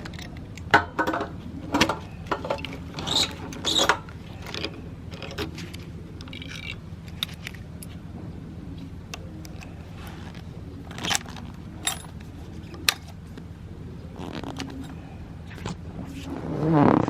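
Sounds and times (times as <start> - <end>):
motorcycle engine idling: 0.0 - 16.2
metallic clicks and jangles: 2.4 - 8.0, 9.1 - 13.1.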